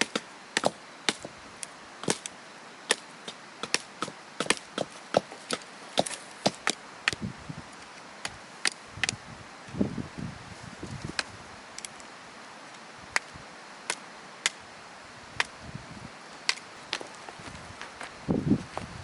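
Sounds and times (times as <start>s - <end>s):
handling rustle: 4.5s - 6.8s, 16.3s - 19.0s.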